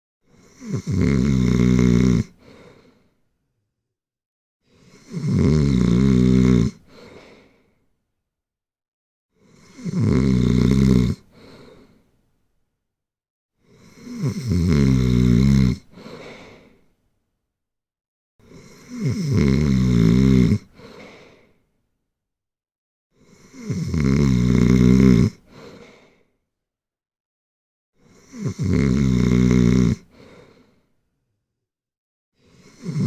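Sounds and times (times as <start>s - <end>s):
snoring: 0.2s - 3.1s, 4.6s - 7.7s, 9.3s - 12.0s, 13.6s - 16.8s, 18.4s - 21.6s, 23.1s - 26.3s, 28.0s - 30.8s, 32.4s - 33.0s
soft breath: 2.4s - 3.3s, 6.8s - 7.9s, 11.3s - 12.2s, 15.9s - 17.0s, 20.7s - 21.6s, 25.5s - 26.4s, 30.1s - 31.0s.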